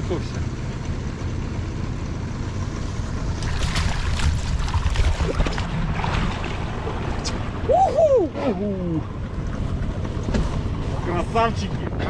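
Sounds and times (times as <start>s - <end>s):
river water: 0.0s - 12.0s
fish splashing: 3.3s - 7.6s.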